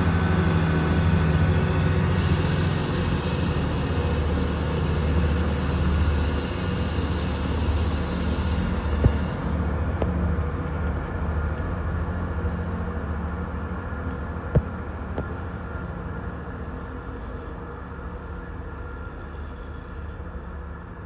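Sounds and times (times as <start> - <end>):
train diesel engines droning: 0.0 - 21.0
short knocks: 9.0 - 10.2, 14.6 - 15.3.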